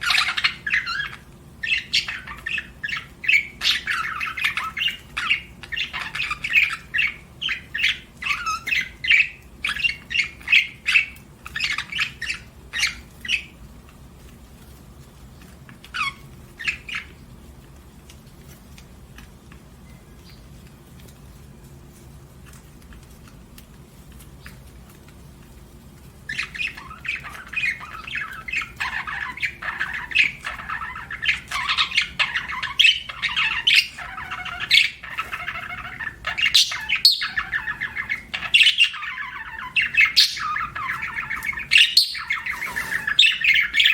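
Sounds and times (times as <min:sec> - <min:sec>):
budgerigar chirping: 0:00.0 - 0:13.6, 0:15.9 - 0:17.2, 0:26.3 - 0:43.9
faint background hum: 0:00.0 - 0:43.9.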